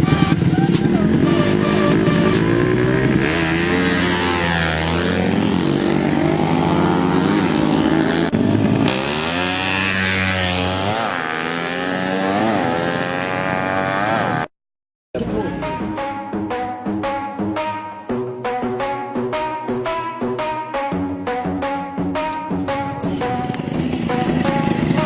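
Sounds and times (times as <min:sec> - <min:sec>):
motorcycle engine revving: 0:00.0 - 0:14.5, 0:22.7 - 0:25.0.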